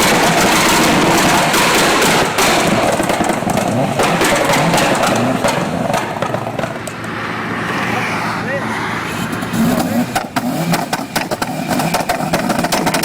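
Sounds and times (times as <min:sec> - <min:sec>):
exhaust cracks and pops: 0:00.0 - 0:07.8, 0:09.4 - 0:13.0
vehicle engine revving: 0:00.0 - 0:13.0.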